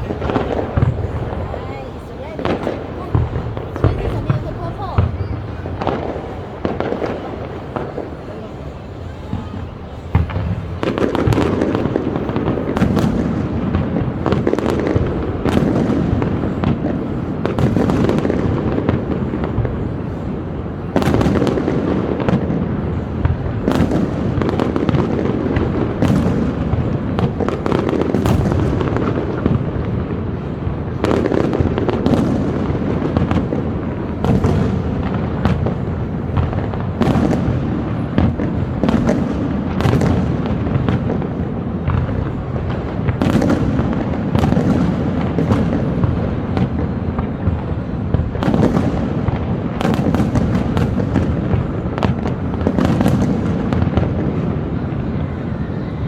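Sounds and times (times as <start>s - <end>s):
rumbling crackling din: 0.0s - 20.2s
fireworks shell bursts and booms: 0.0s - 54.9s
sharp fireworks bangs: 0.0s - 56.0s.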